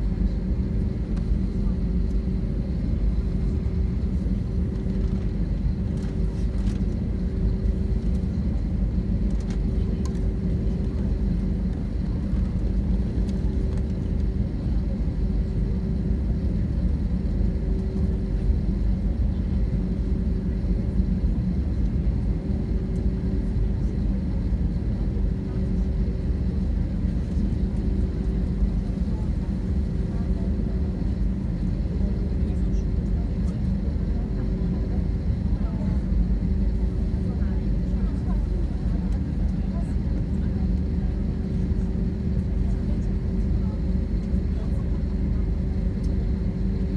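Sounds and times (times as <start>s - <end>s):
airliner engines rumbling: 0.0s - 46.9s
faint constant hum: 25.6s - 45.5s.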